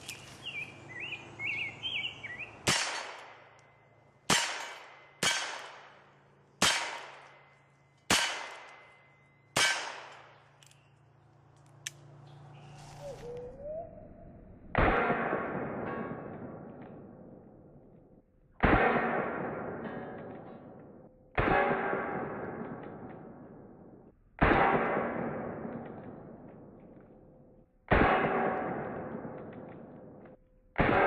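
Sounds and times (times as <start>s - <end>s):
birds chirping: 0.0s - 2.7s, 12.0s - 14.3s
revolver gunshots: 2.6s - 3.6s, 4.2s - 10.5s, 14.6s - 17.6s, 18.6s - 20.2s, 21.3s - 26.7s, 27.9s - 30.2s, 30.8s - 31.0s.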